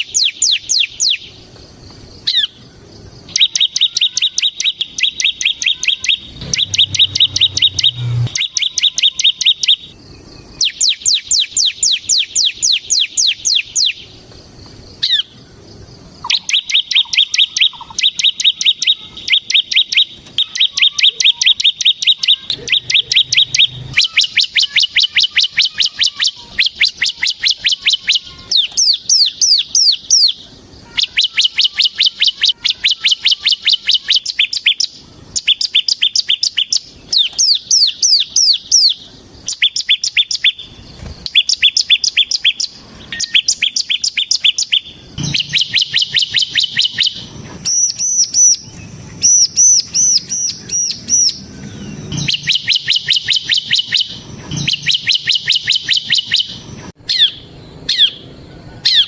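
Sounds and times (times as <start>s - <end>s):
bird singing chip notes: 0.0s - 59.0s
bird ringing looped notes: 3.3s - 10.0s, 16.3s - 29.4s, 42.4s - 48.6s, 52.1s - 58.2s.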